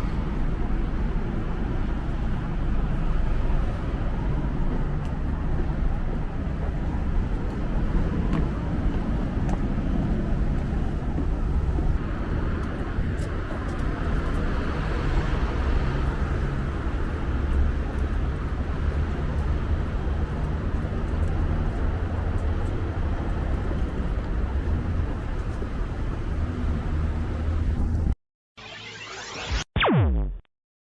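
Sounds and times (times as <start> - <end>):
street traffic noise: 0.0 - 28.2.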